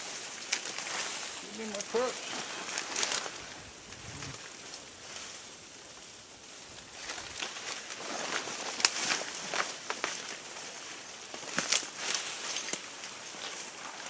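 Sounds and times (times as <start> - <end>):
dry leaves rustling underfoot: 0.0 - 14.0
twigs snapping: 0.4 - 4.4.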